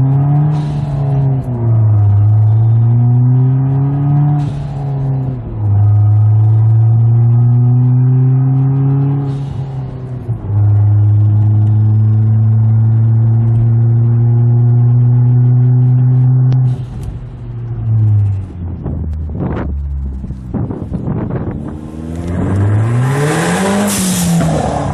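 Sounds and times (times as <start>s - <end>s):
turbocharged car engine under load: 0.0s - 24.9s.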